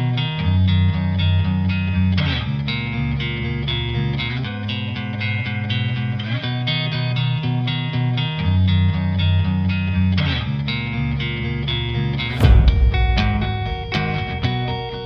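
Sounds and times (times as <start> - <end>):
plucked guitar: 0.0 - 15.0
bass line: 12.0 - 15.0
heavy low thump: 12.2 - 15.0.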